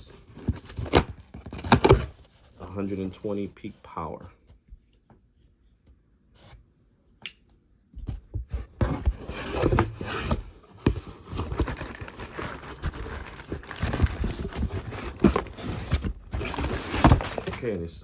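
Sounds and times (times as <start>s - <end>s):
cardboard box rustling and scraping: 0.0s - 3.4s, 8.1s - 17.8s.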